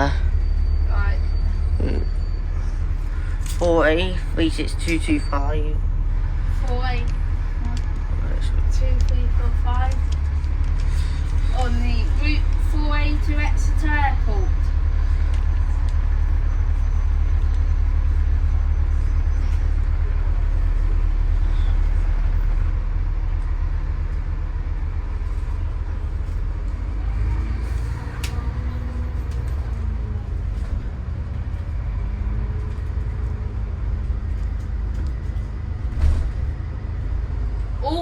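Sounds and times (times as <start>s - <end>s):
bus engine rumbling: 0.0s - 38.0s.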